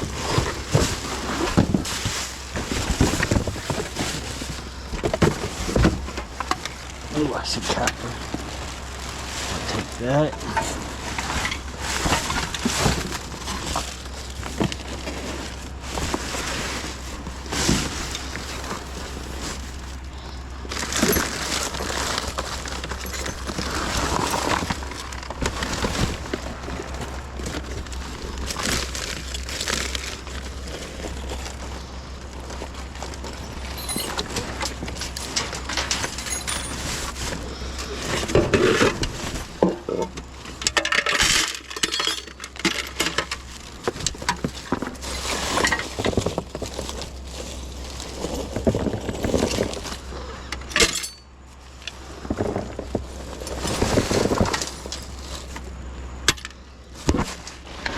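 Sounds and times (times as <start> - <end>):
hands rummaging through junk: 0.0 - 57.9
steady low hum: 0.0 - 57.9.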